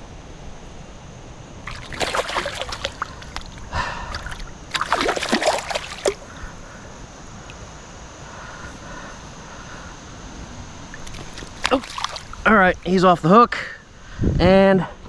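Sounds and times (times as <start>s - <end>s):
fish splashing in water: 1.7s - 6.5s, 10.9s - 12.4s.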